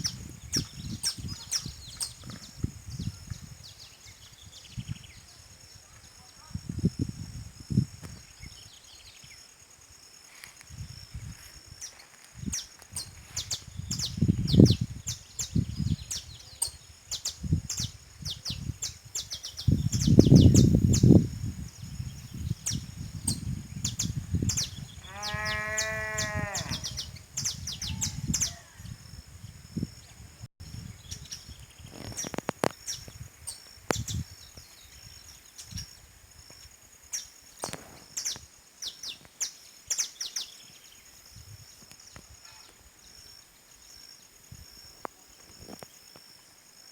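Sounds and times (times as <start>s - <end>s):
birds chirping: 11.8s - 29.0s.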